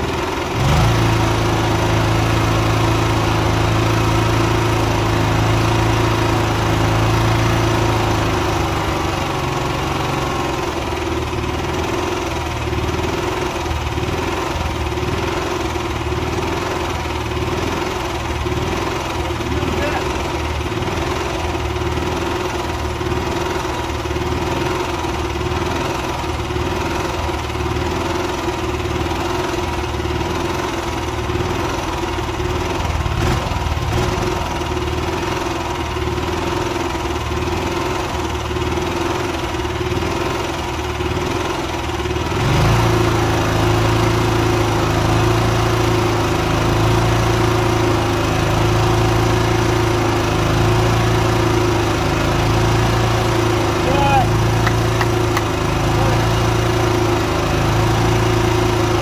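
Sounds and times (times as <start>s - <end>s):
generator engine running: 0.0s - 59.0s.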